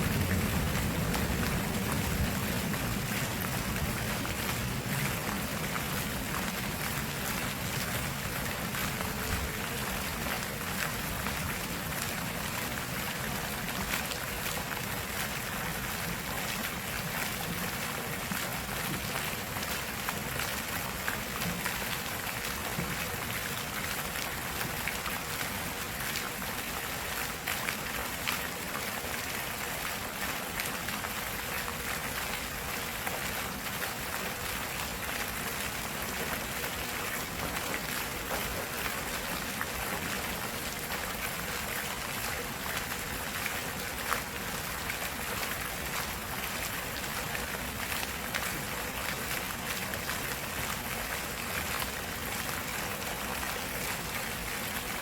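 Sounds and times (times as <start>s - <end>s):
stream water rushing: 0.0s - 55.0s.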